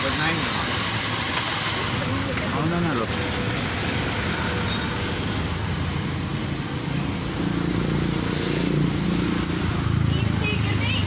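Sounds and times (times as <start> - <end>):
road traffic: 0.0 - 11.0.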